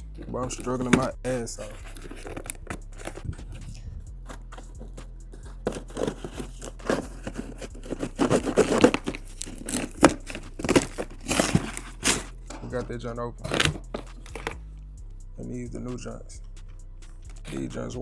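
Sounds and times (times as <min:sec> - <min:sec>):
cardboard box tearing and crinkling: 0:00.2 - 0:03.4, 0:04.2 - 0:12.8, 0:13.4 - 0:14.6.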